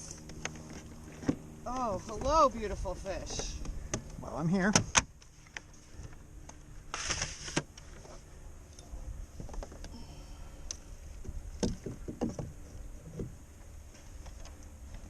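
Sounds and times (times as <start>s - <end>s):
knocks and clatter on kayak: 11.2s - 13.4s.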